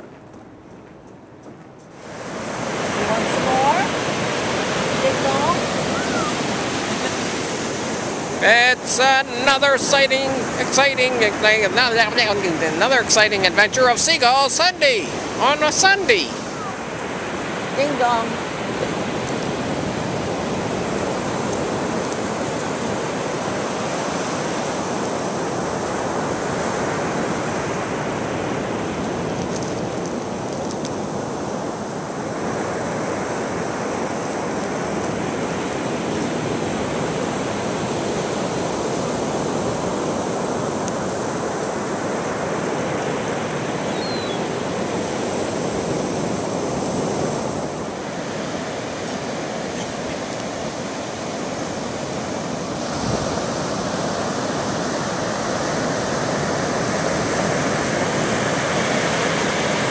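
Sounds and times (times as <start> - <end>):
ocean surf washing onto beach: 0.0 - 59.9.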